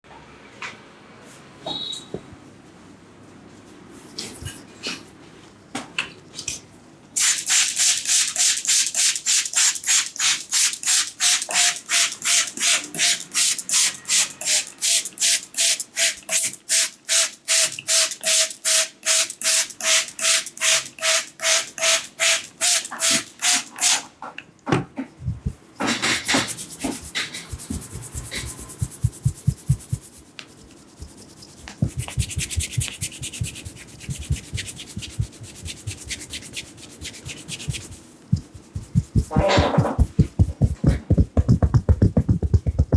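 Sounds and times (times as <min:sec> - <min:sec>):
hands rubbing oil into hair: 0:25.2 - 0:42.9.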